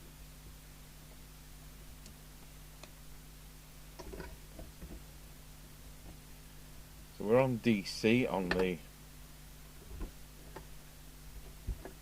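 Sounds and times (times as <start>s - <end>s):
steady low hum: 0.0s - 12.0s
radio control clicks: 8.4s - 8.7s.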